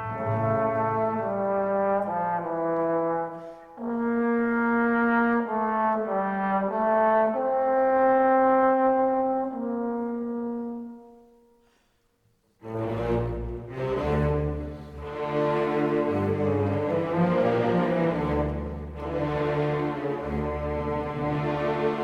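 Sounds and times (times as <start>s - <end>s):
slow brass melody: 0.0s - 11.8s.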